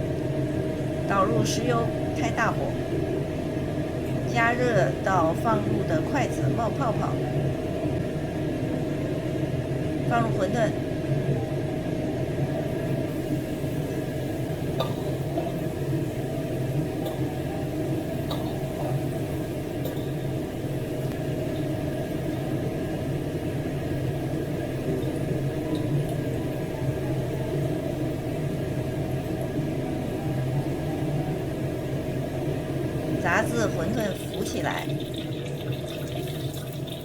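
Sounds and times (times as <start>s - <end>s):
constant low hum: 0.0s - 37.0s
oil bubbling and sizzling: 10.8s - 37.0s.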